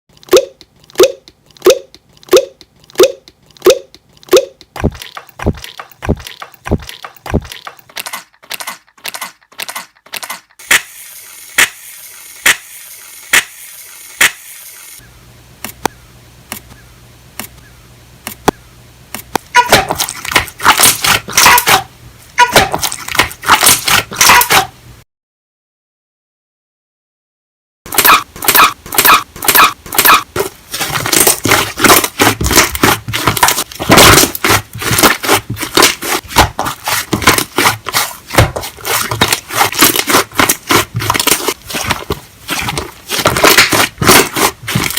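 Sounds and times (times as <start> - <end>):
slime popping and crackling: 30.8 - 44.9.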